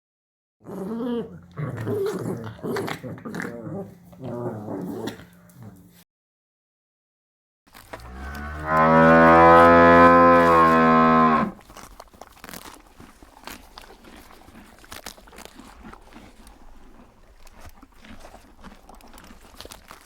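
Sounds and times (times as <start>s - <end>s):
cow mooing: 8.0s - 11.6s.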